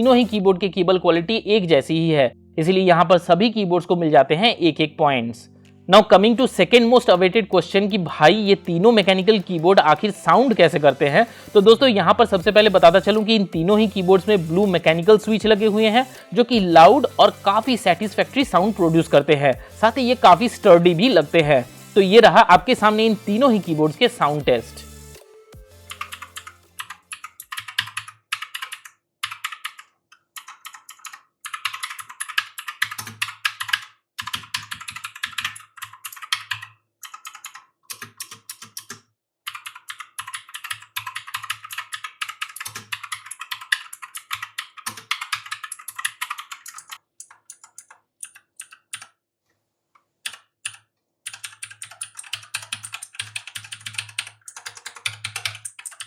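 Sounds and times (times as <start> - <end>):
mechanical keyboard typing: 6.4 - 11.7, 25.9 - 49.2, 50.2 - 56.0.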